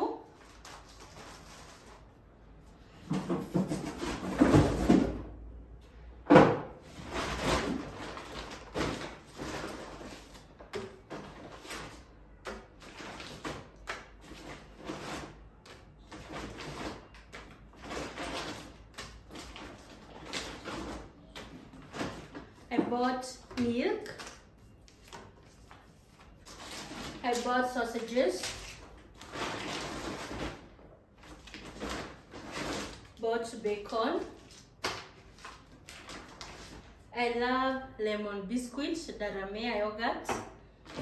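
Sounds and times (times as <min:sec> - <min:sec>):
rustling of bags and packaging: 0:00.0 - 0:05.0, 0:06.8 - 0:37.1
items knocking on surface: 0:03.0 - 0:05.3, 0:06.3 - 0:06.8.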